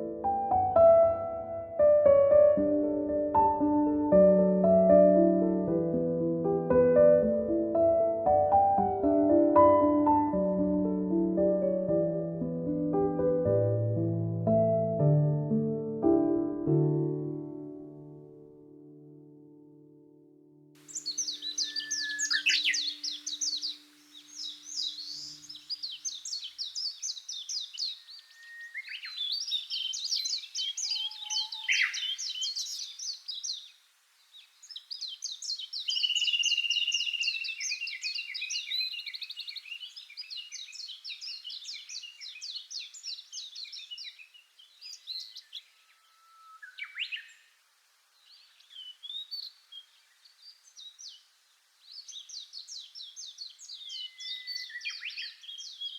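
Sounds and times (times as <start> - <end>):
soft background music: 0.0 - 20.7
small birds chirping: 20.8 - 55.9.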